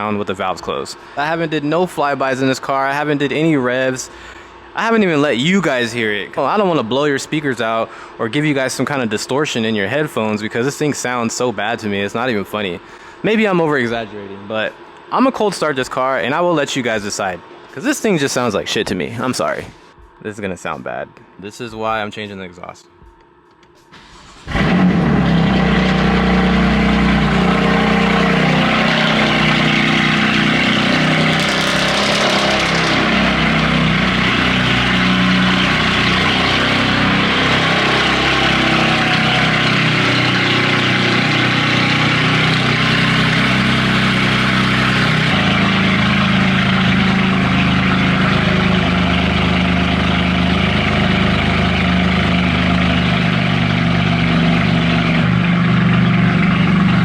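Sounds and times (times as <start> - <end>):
car engine idling: 24.0 - 57.0.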